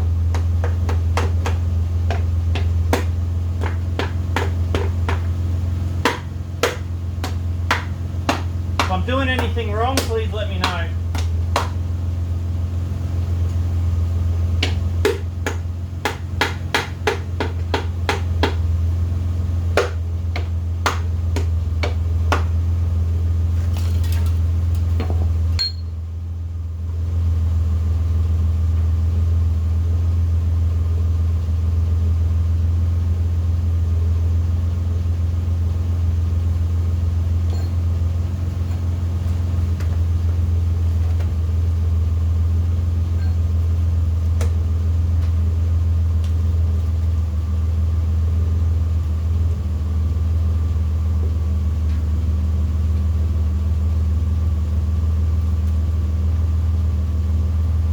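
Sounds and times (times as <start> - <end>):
steady low hum: 0.0 - 57.9.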